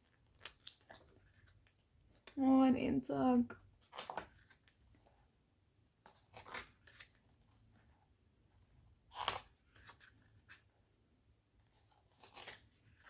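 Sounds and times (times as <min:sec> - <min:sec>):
paper pages rustling: 0:00.0 - 0:02.4, 0:03.8 - 0:05.2, 0:06.0 - 0:07.6.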